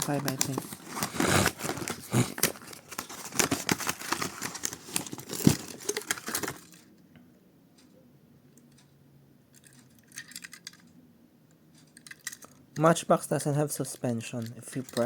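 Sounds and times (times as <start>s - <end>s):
packaging being torn and crinkled: 0.0s - 6.7s.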